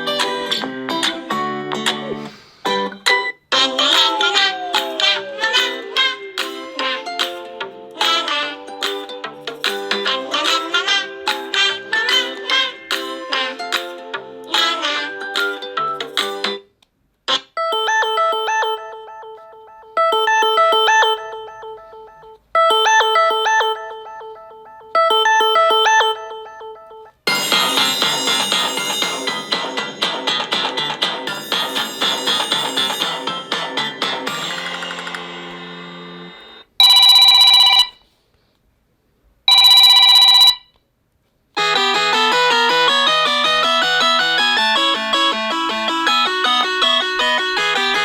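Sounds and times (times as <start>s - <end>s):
ringtone melody: 2.9s - 16.4s, 17.6s - 38.0s, 39.5s - 40.6s, 41.6s - 48.0s
melodic ringtone of quick notes: 17.6s - 30.1s, 31.3s - 38.0s, 39.5s - 40.6s
telephone bell ring: 17.7s - 29.7s, 34.3s - 38.0s, 39.5s - 40.7s.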